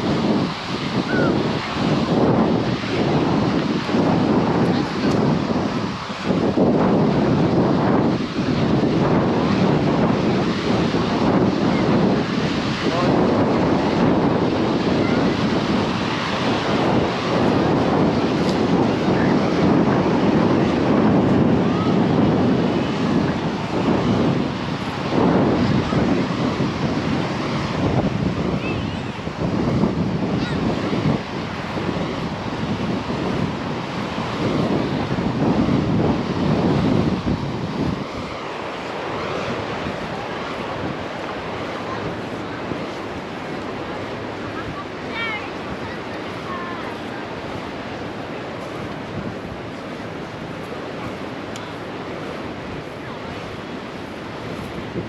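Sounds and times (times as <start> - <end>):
ocean surf rushing: 0.0 - 55.0
wind buffeting microphone: 0.0 - 55.0.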